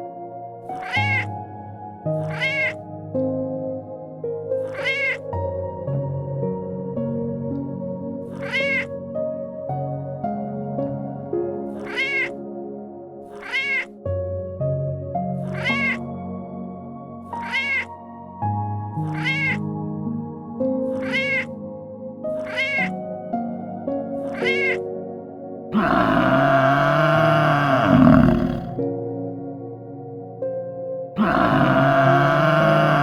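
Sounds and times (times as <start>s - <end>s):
soft background music: 0.0s - 25.8s, 28.3s - 31.2s
loud rough animal sound: 0.7s - 1.3s, 2.2s - 2.8s, 4.7s - 5.3s, 8.3s - 8.9s, 11.8s - 12.4s, 13.3s - 14.0s, 15.4s - 16.0s, 17.3s - 17.9s, 19.1s - 19.6s, 20.9s - 21.5s, 22.4s - 22.9s, 24.3s - 24.8s, 25.7s - 28.8s, 31.2s - 33.0s
cat meowing: 0.7s - 1.4s, 2.2s - 2.8s, 4.6s - 5.3s, 8.3s - 8.9s, 11.7s - 12.4s, 13.3s - 14.0s, 15.4s - 16.0s, 17.3s - 18.0s, 19.0s - 19.6s, 20.9s - 21.5s, 22.4s - 22.9s, 24.3s - 24.8s, 25.8s - 28.8s, 31.2s - 33.0s.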